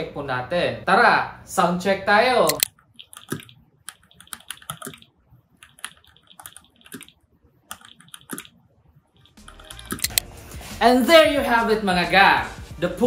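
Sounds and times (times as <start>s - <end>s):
typing on mechanical keyboard: 2.5s - 8.5s, 9.2s - 10.2s.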